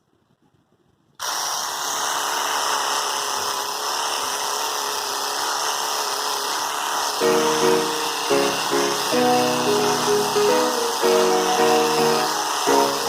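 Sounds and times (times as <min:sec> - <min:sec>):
epilator buzzing: 0:06.3 - 0:13.0.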